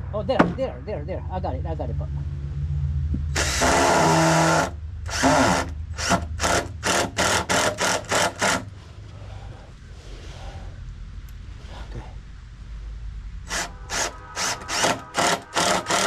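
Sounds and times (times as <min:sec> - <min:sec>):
low steady hum: 0:00.0 - 0:16.0
power drill driving a fastener: 0:03.3 - 0:08.7, 0:13.5 - 0:16.0.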